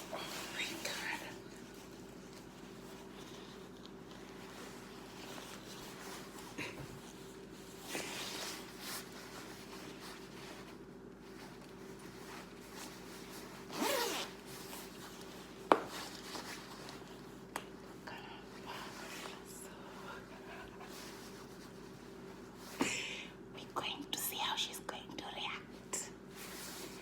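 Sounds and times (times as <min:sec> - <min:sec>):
fabric rustling: 0:00.0 - 0:22.9, 0:26.2 - 0:27.0
low steady hum: 0:00.0 - 0:27.0
zipper being drawn up: 0:13.6 - 0:14.8.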